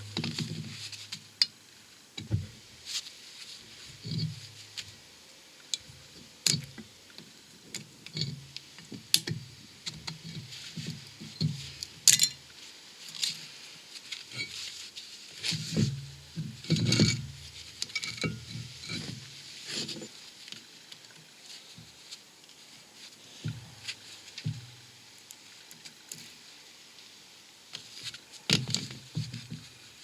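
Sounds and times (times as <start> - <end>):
metal tools clicking and clinking: 12.1 - 12.4, 17.8 - 19.0.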